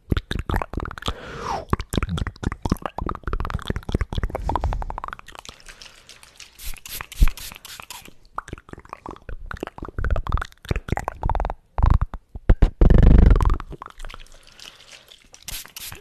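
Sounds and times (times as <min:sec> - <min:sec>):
croaky throat gurgling: 0:00.0 - 0:05.5, 0:08.4 - 0:14.1
wet mouth clicks: 0:00.0 - 0:14.2, 0:15.0 - 0:16.0.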